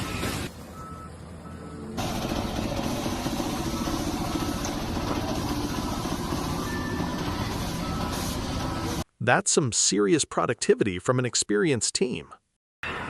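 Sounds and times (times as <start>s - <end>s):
heavy vehicle engine running: 0.0s - 9.0s
backup alarm beeps: 0.7s - 2.0s.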